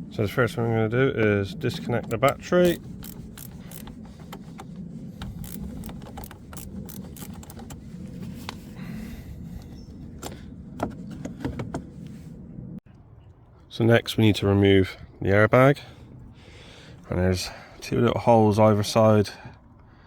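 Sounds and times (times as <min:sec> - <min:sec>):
low background rumble: 0:00.0 - 0:18.7
metallic clicks of hand tools: 0:02.0 - 0:03.9, 0:05.3 - 0:07.8.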